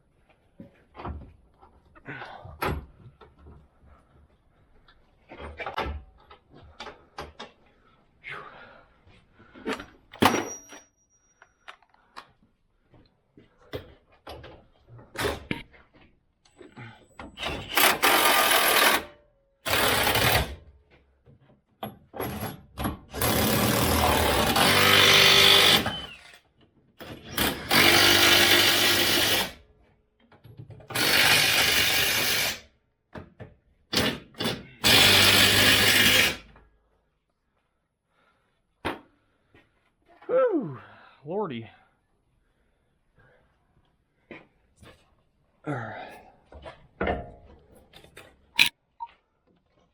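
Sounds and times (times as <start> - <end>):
impact wrench bursts: 17.4 - 20.6, 23.2 - 26.4, 27.2 - 29.6, 34.0 - 36.4.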